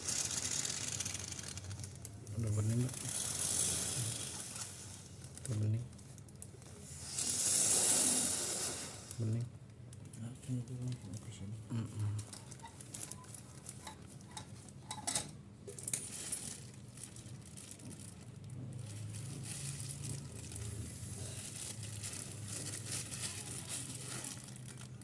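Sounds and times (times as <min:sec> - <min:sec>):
compressed gas hissing through pipes: 0:02.9 - 0:05.2, 0:06.8 - 0:09.4.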